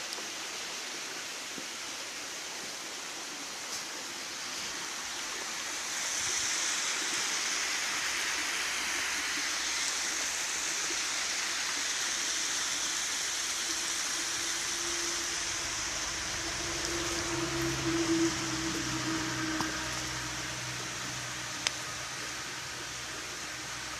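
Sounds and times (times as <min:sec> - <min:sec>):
running water rushing: 0:00.0 - 0:23.9
low hum: 0:13.6 - 0:23.9.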